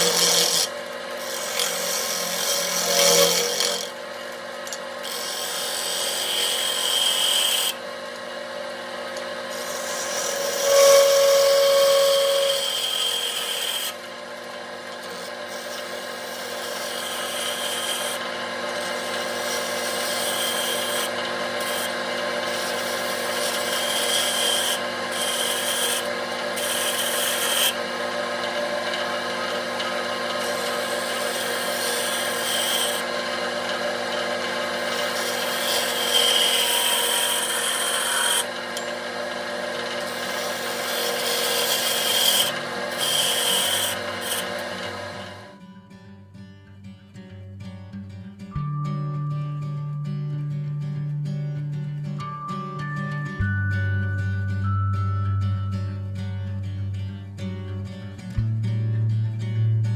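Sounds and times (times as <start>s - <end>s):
turning tool scraping wood: 0.0s - 4.0s, 4.7s - 7.8s, 9.5s - 14.1s, 14.8s - 45.5s
wood lathe motor hum: 0.0s - 45.6s.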